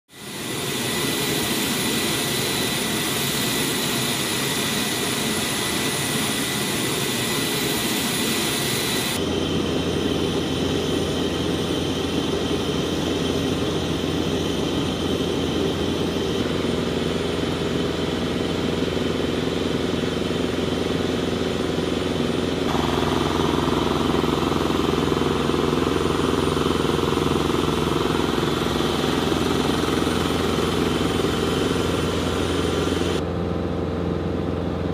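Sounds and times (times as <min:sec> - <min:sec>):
jet engine noise: 0:00.1 - 0:34.9
high whining tones: 0:21.7 - 0:33.2.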